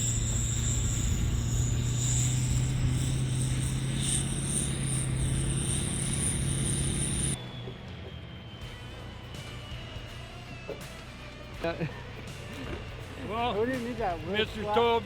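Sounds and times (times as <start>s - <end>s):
high insect buzz: 0.0s - 7.4s
pickup engine idling: 0.0s - 7.4s.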